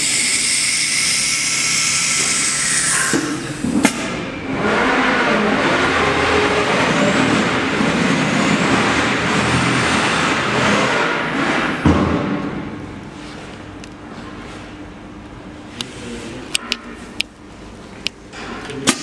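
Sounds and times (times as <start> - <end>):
cnc router machining: 0.0 - 11.8
machine thump: 11.8 - 12.8.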